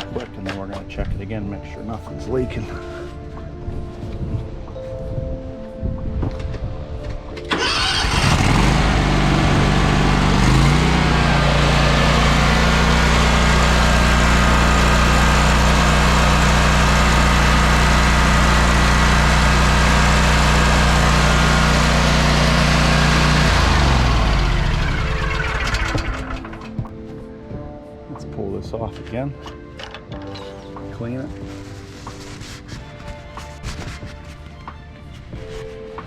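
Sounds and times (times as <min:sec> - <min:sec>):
mower engine starting and running: 0:07.5 - 0:26.9.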